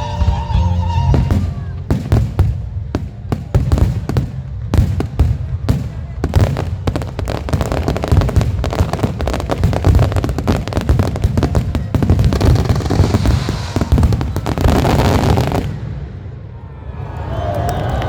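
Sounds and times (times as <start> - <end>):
fireworks banging: 0.0 - 16.5
hissing crackle: 6.7 - 15.8.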